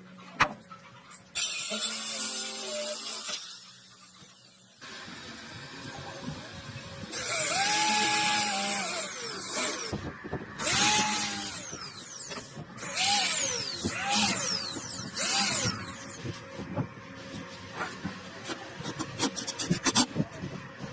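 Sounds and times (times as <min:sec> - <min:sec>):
power tool motor whining: 0:07.1 - 0:16.4.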